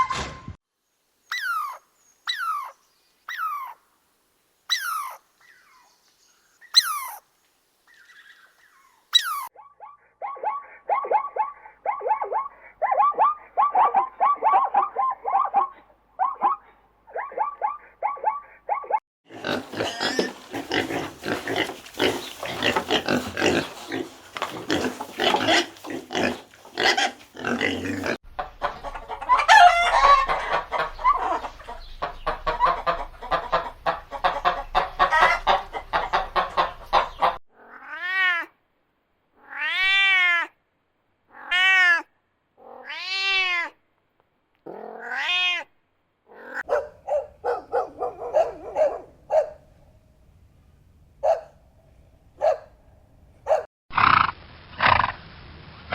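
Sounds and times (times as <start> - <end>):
choppy animal calls: 8.0 - 28.2
noisy animal calls and clatter: 19.4 - 37.4
cat meowing: 39.4 - 40.5, 41.3 - 43.8, 44.8 - 45.7.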